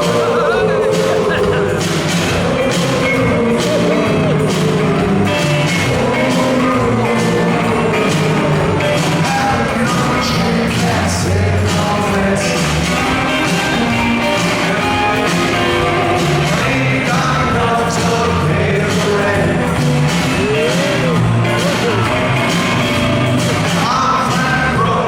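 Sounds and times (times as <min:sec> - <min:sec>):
drums: 0:00.0 - 0:25.0
electric guitar: 0:00.0 - 0:25.0
person singing: 0:00.0 - 0:25.0
upright bass: 0:00.0 - 0:25.0.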